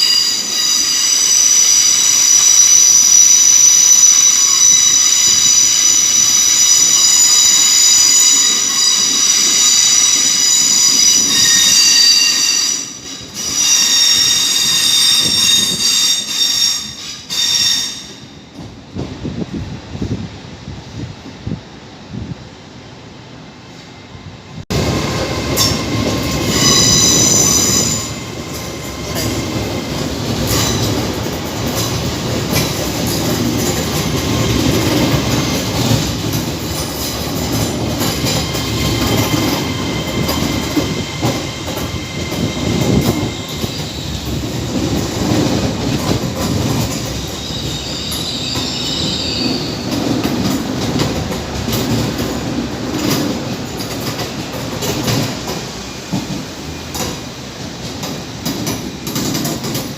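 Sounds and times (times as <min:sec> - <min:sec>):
train wheels squealing: 0:00.0 - 0:18.7, 0:25.2 - 0:57.4
train rumble and wheel clatter: 0:00.0 - 0:59.9.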